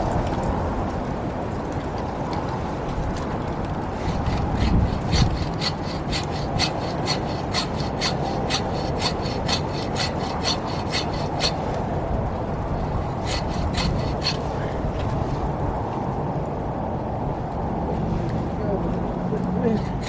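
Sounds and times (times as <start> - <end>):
strong wind rumbling: 2.9 - 10.4
hand saw cutting branch: 3.8 - 12.0, 12.7 - 15.5, 19.6 - 20.0.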